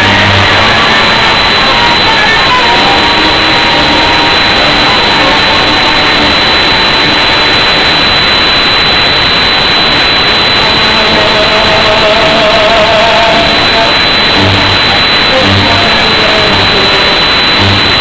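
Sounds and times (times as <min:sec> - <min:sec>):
distorted tango music over loudspeakers: 0:00.0 - 0:08.8, 0:09.6 - 0:18.0.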